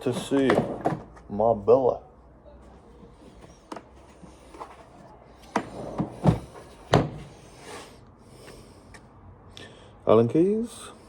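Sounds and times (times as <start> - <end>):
handling noise: 0.0 - 1.3, 2.8 - 7.5
tools knocking and clunking: 0.0 - 1.3, 3.0 - 4.8, 5.4 - 7.3.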